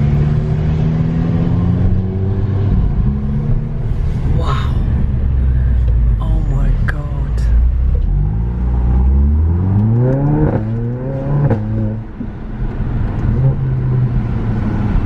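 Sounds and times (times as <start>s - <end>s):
car engine accelerating hard: 0.0s - 4.3s, 7.9s - 15.0s.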